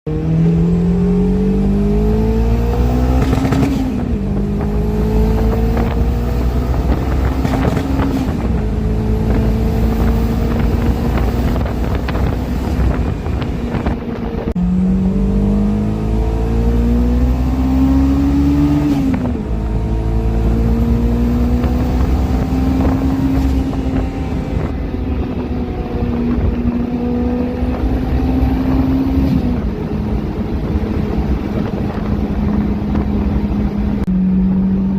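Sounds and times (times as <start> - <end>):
car engine accelerating: 0.1 - 34.9.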